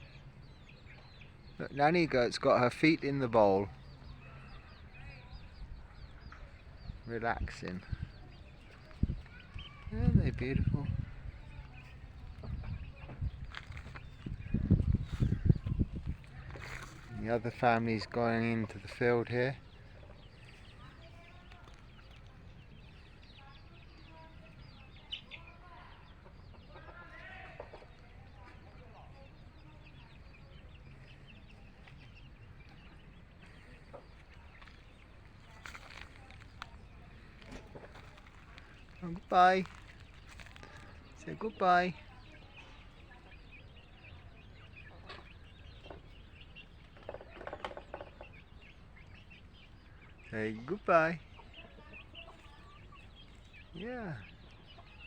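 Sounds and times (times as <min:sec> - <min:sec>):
chicks peeping: 0:00.0 - 0:55.0.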